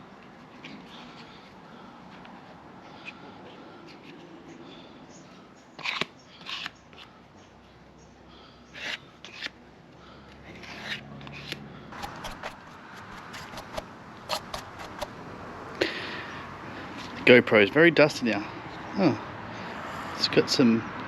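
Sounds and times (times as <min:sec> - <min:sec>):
sharp clicks: 0:12.0 - 0:15.1
scraping and rubbing: 0:12.0 - 0:15.2.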